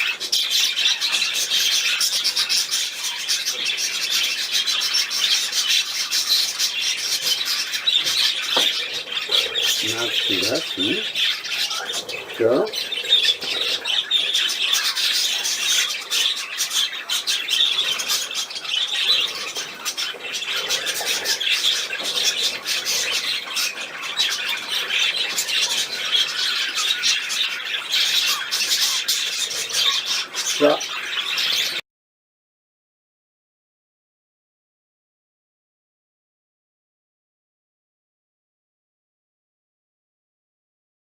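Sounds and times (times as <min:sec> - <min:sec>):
budgerigar chattering: 0:05.0 - 0:31.7.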